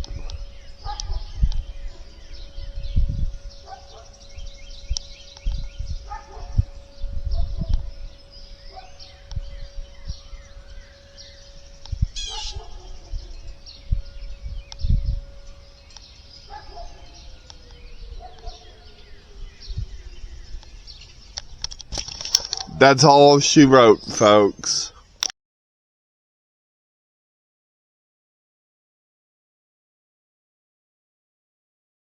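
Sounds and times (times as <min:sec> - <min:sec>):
distant tornado siren: 0:00.0 - 0:24.6
birds chirping: 0:00.0 - 0:25.3.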